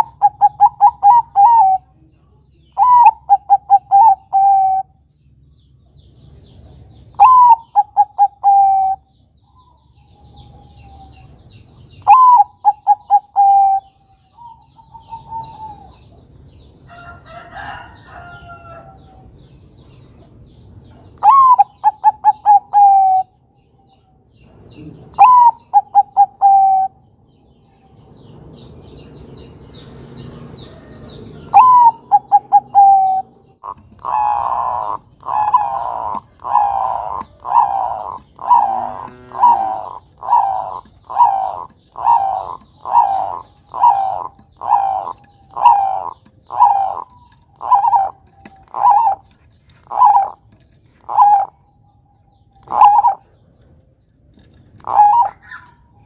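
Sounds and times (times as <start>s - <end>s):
dove cooing: 0.0s - 2.0s, 2.8s - 4.9s, 7.1s - 11.4s, 12.0s - 16.2s, 21.2s - 23.4s, 24.7s - 27.0s, 30.8s - 51.7s, 52.4s - 53.4s, 54.4s - 56.0s
small birds chirping: 0.0s - 56.0s
harsh bird call: 30.6s - 50.4s, 54.8s - 56.0s.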